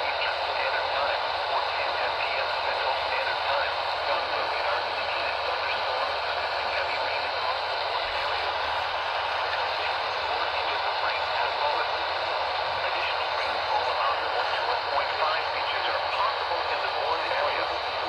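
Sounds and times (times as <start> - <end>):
faint talk on radio: 0.0 - 18.0
radio static hiss: 0.0 - 18.0.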